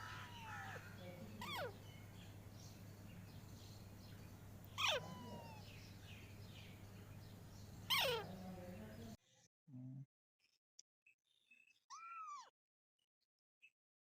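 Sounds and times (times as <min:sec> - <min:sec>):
parrot calls: 0:00.0 - 0:02.0, 0:04.6 - 0:05.7, 0:07.9 - 0:08.4.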